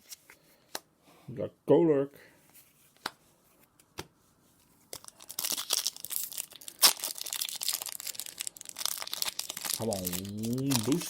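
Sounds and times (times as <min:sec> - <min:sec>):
foil wrapper crinkling and tearing: 0:04.9 - 0:11.0.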